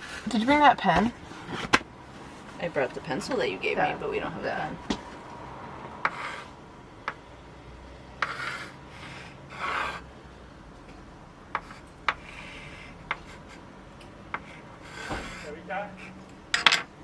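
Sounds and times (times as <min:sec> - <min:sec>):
scraping rubbing strokes: 0:06.0 - 0:06.6, 0:08.2 - 0:10.1, 0:11.5 - 0:13.7, 0:14.3 - 0:16.2.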